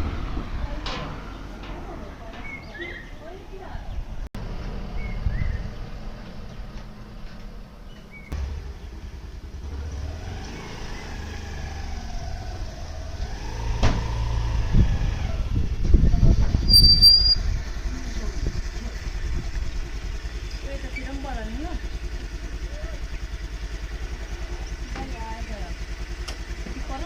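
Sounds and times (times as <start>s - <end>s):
vehicle rumble: 0.0s - 27.0s
short high-pitched beep: 16.7s - 17.4s.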